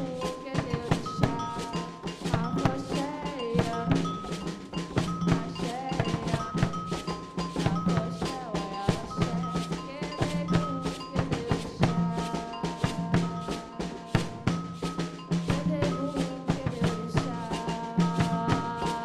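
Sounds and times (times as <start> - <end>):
drums playing fast rhythm: 0.0 - 19.0
held melodic tones: 0.0 - 19.0.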